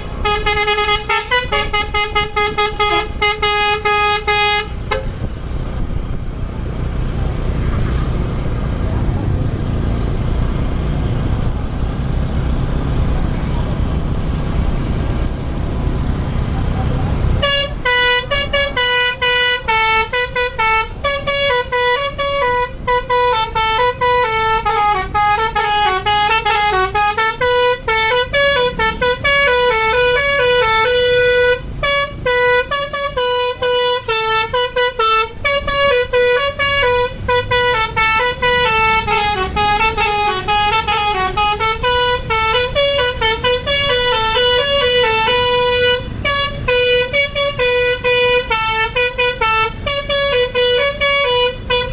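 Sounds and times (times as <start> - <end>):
bus horn playing a melody: 0.0 - 5.3, 16.6 - 51.9.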